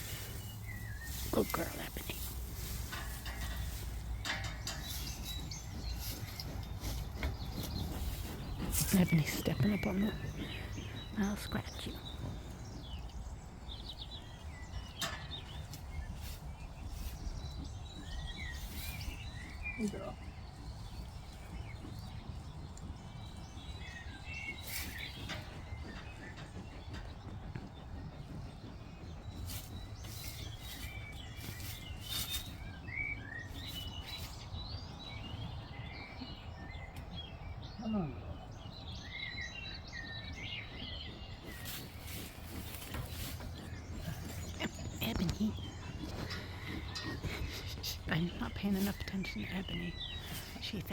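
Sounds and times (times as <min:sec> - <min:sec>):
scratchy rustles: 0:00.0 - 0:12.9, 0:29.2 - 0:34.5, 0:41.0 - 0:50.9
steady low rumble: 0:00.0 - 0:37.6, 0:38.7 - 0:50.9
small birds chirping: 0:00.0 - 0:50.9.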